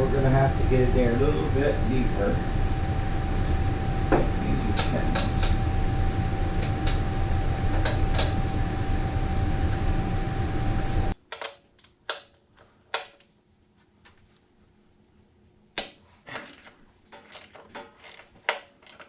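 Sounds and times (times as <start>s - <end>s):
low background hum: 0.0s - 11.2s
thin whine: 0.0s - 11.2s.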